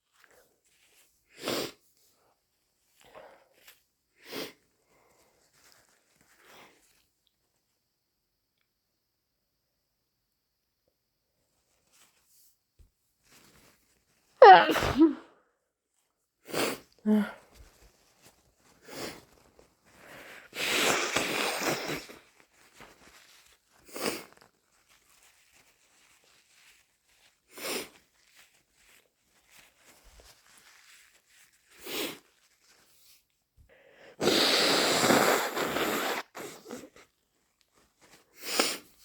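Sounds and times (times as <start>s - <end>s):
person blowing nose: 1.3s - 1.8s, 4.2s - 4.6s, 14.4s - 15.2s, 16.4s - 17.4s, 18.8s - 23.2s, 23.8s - 24.5s, 27.5s - 28.0s, 31.7s - 32.3s, 33.9s - 37.1s, 38.3s - 39.0s
short nasal bursts: 14.4s - 15.2s, 20.4s - 22.2s, 34.1s - 37.0s.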